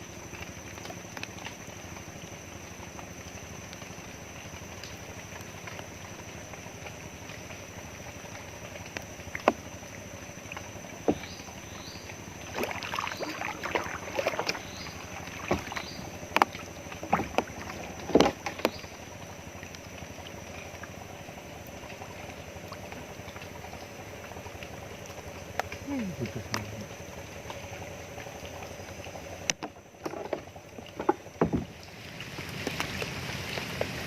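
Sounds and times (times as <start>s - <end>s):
sharp knocks and clicks: 29.5s - 31.8s.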